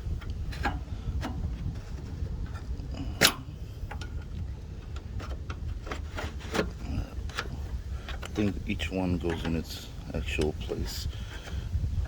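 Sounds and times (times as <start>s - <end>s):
steady low rumble: 0.0s - 12.0s
plastic clips clicking into place: 3.1s - 4.1s.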